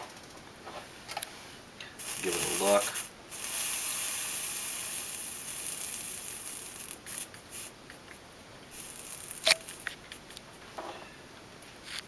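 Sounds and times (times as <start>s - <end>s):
soldering iron sizzling: 2.0s - 8.0s, 8.7s - 9.8s.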